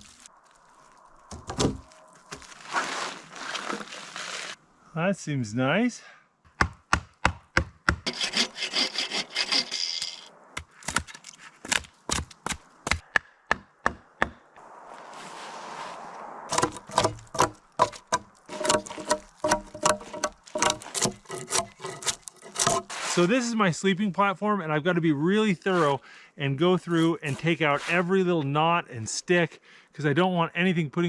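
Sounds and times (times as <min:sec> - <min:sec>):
hand saw rasping through wood: 0:08.1 - 0:09.8, 0:16.5 - 0:23.2.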